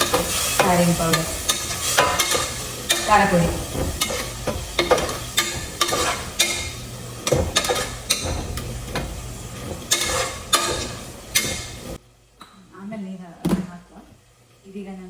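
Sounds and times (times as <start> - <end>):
spices sizzling: 0.0 - 12.0
spoon scraping a pan: 0.0 - 12.0.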